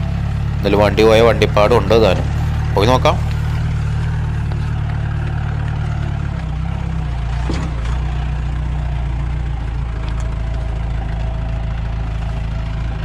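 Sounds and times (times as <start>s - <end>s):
diesel engine running: 0.0s - 13.0s.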